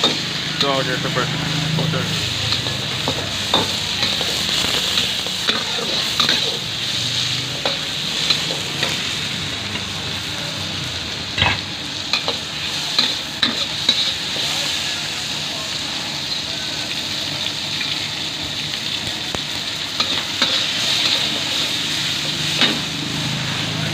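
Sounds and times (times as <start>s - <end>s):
rice sizzling in a wok: 0.0s - 23.9s
metal spatula scraping a pan: 1.9s - 9.0s.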